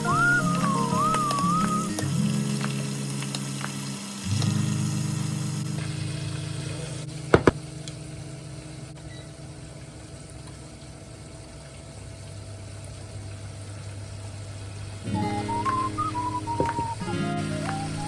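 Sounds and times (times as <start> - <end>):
kitchen appliance humming: 0.0 - 8.0, 15.2 - 18.0.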